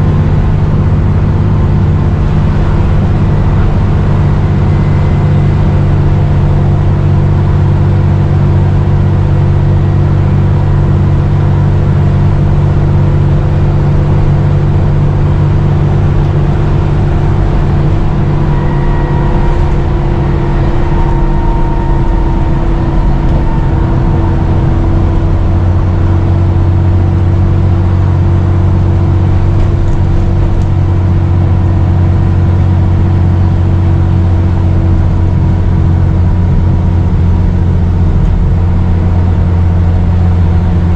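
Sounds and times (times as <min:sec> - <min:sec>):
bus diesel engine droning: 0:00.0 - 0:40.9
faint higher tone: 0:02.0 - 0:31.7.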